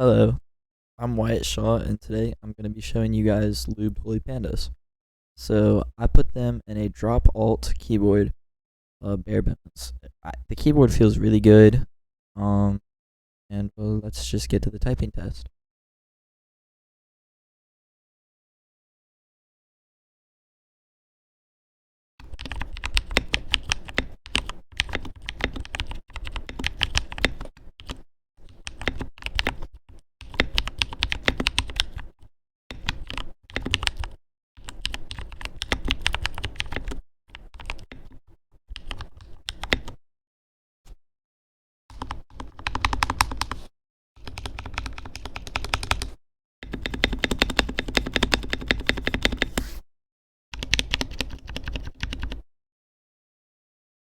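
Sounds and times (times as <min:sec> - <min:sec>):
mechanical keyboard typing: 0:22.2 - 0:32.1, 0:32.7 - 0:38.2, 0:38.8 - 0:40.0, 0:41.9 - 0:43.6, 0:44.2 - 0:49.6, 0:50.6 - 0:52.4.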